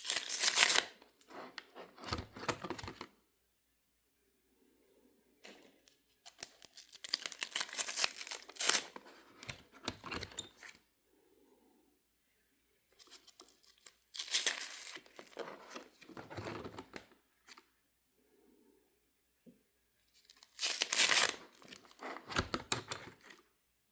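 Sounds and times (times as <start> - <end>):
trading cards crinkling and rustling: 0.0 - 3.1, 5.5 - 10.8, 13.0 - 17.1, 20.3 - 23.4.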